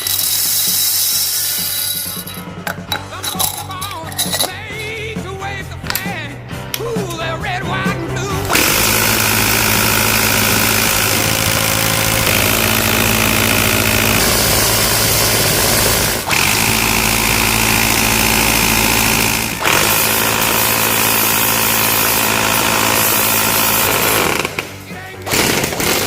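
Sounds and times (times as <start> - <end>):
airsoft minigun firing bursts: 8.4 - 26.0.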